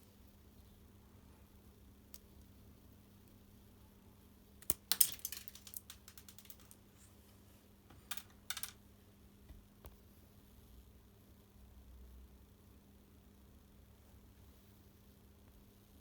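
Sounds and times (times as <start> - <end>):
plastic parts clicking and rattling: 4.6 - 6.8, 8.0 - 8.8.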